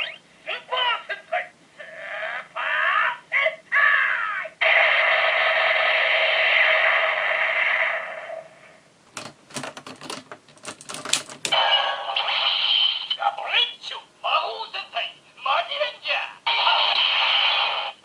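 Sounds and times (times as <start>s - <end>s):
electronic sound: 0.0s - 0.2s
electronic toy sound effect: 0.0s - 0.2s, 11.5s - 13.2s
plastic clicks: 9.1s - 11.5s.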